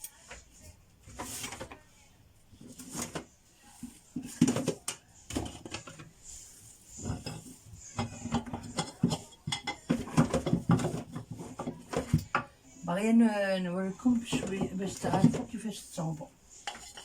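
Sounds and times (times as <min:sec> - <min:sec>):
dishes and utensils clinking: 0:00.0 - 0:00.5, 0:02.6 - 0:12.6, 0:14.0 - 0:15.8, 0:16.5 - 0:17.0.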